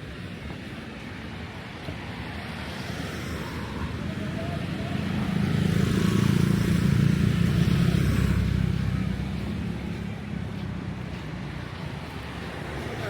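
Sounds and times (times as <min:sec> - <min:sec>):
vehicle engine passing by: 0:03.2 - 0:13.0.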